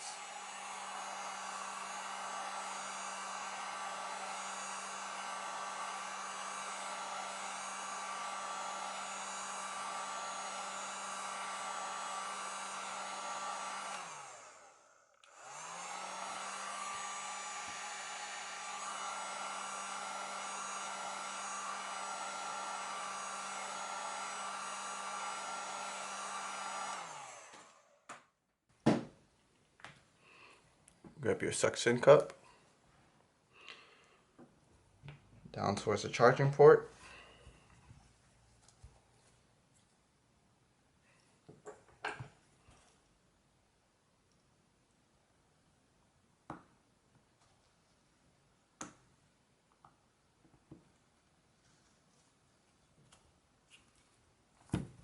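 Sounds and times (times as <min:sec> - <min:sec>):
heat gun blowing with motor hum: 0:00.0 - 0:28.2.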